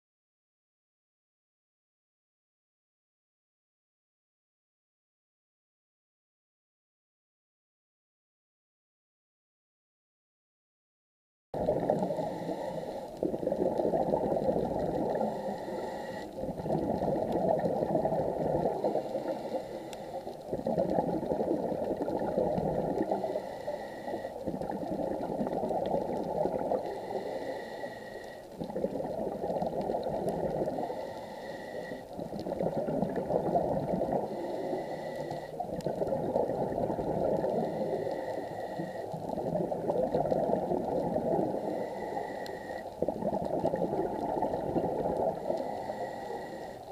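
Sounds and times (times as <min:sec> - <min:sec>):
diver breathing through regulator: 0:11.6 - 0:46.9
gurgling bubbles: 0:11.6 - 0:46.9.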